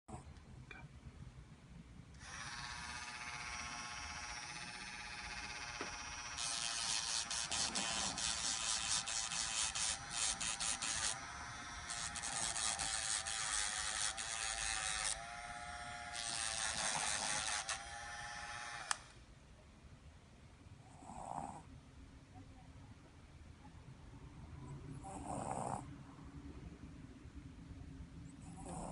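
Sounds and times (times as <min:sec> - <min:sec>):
dog snoring faintly: 0:00.1 - 0:00.3, 0:07.5 - 0:08.8, 0:20.8 - 0:21.7, 0:24.9 - 0:25.9, 0:28.4 - 0:28.9
electric nail grinder whining: 0:02.2 - 0:19.2
snort-like breath: 0:28.4 - 0:28.9.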